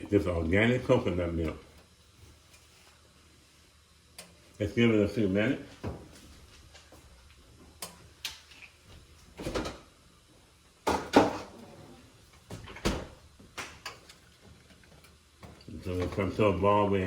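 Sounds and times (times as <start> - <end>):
kitchen knocks and clunks: 9.4 - 9.9, 10.8 - 11.6, 12.5 - 14.0.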